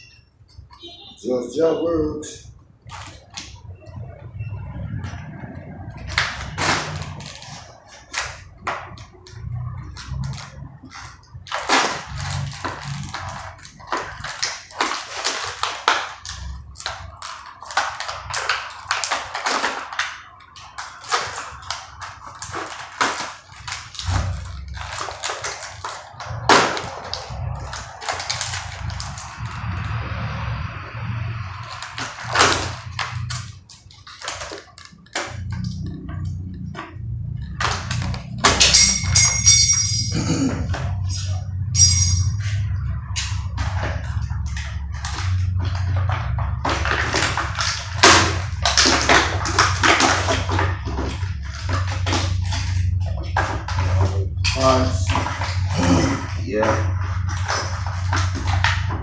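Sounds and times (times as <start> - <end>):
packaging crinkling: 5.4 - 29.5, 31.4 - 38.5, 42.3 - 59.0
steady low hum: 35.4 - 59.0
metal parts knocking and clinking: 38.4 - 42.6
bright ringing ping: 38.7 - 40.2, 41.8 - 42.4.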